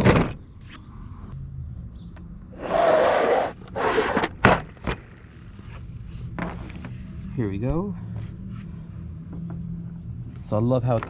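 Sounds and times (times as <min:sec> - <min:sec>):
tool case scraping and rustling: 0:02.7 - 0:07.0.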